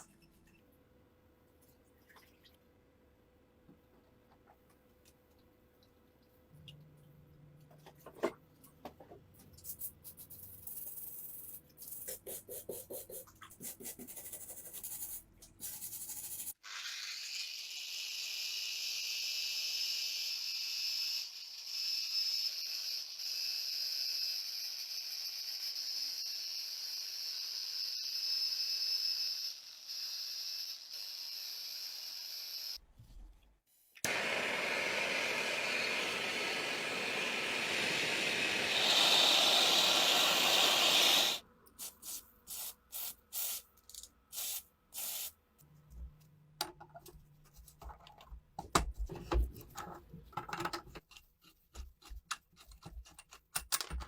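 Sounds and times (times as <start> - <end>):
pressurised spray hissing: 34.1 - 43.6, 44.4 - 45.3
irregular clicks and scrapes: 45.6 - 54.0.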